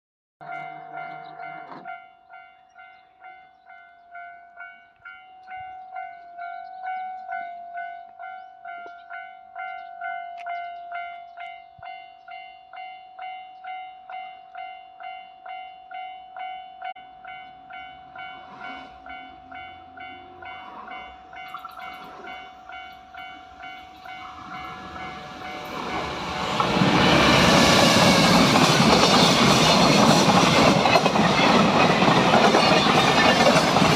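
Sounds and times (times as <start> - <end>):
level-crossing bell ringing: 0.4 - 26.7
freight train passing: 0.4 - 33.9.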